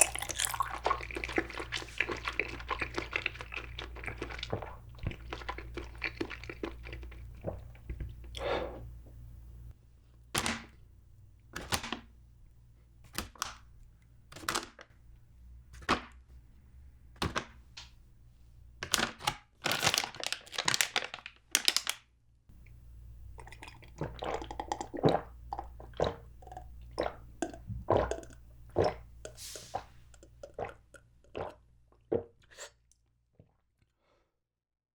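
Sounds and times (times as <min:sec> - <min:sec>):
wet chewing: 0:00.0 - 0:08.4, 0:23.4 - 0:32.7.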